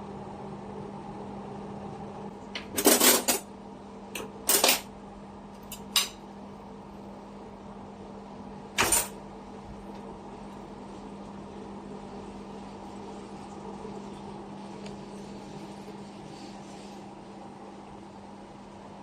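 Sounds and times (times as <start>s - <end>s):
steady low hum: 0.0s - 19.0s
kitchenware clacking: 2.6s - 3.4s, 8.8s - 9.2s.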